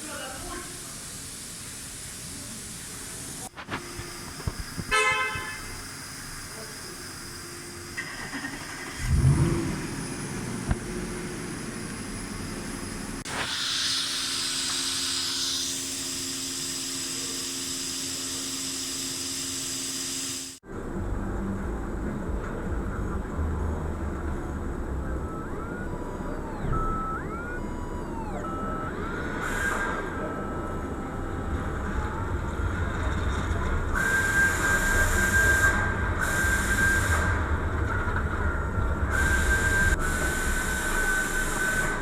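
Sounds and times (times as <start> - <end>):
air hissing: 0.6 - 20.6
pneumatic air tool whining: 11.6 - 20.6, 29.0 - 30.3.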